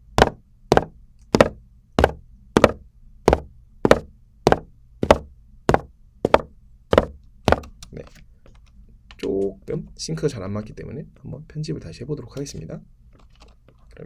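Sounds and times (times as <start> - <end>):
sharp footsteps walking: 0.0 - 7.8.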